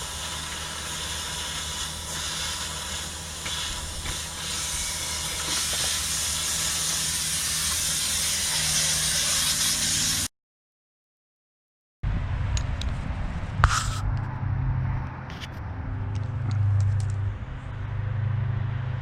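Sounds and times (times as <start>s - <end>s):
low motor hum: 12.0s - 19.0s.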